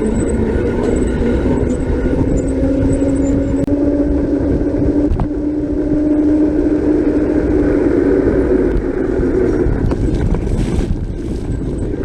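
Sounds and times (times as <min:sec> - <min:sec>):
steady hum: 0:00.0 - 0:12.0
wind on microphone: 0:00.0 - 0:12.0.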